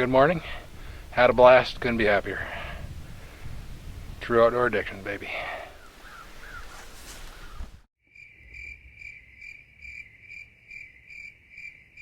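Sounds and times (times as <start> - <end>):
cricket chirping: 8.0 - 12.0.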